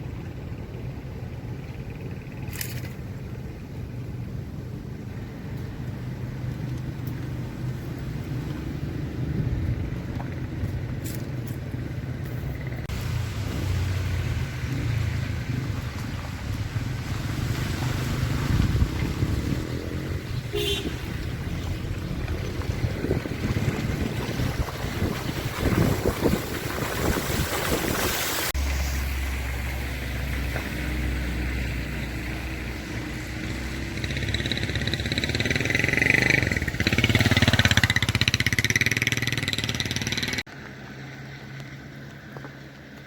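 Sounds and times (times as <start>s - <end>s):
car driving low rumble: 0.0s - 43.0s
broad hiss: 12.9s - 16.2s.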